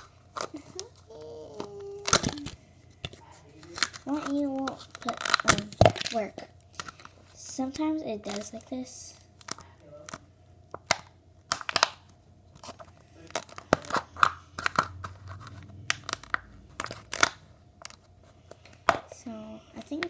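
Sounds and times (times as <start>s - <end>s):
plastic cap clicking and crackling: 1.6s - 6.2s.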